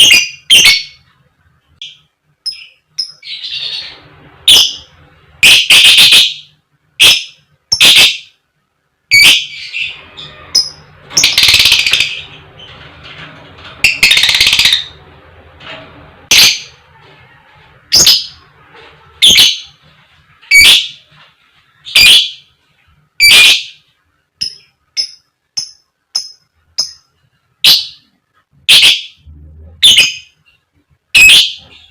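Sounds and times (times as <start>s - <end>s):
lovebird harsh calls: 9.1s - 12.3s, 13.8s - 15.0s, 20.5s - 21.0s, 21.9s - 22.4s, 23.2s - 23.8s, 28.7s - 29.2s, 29.8s - 30.4s, 31.1s - 31.7s.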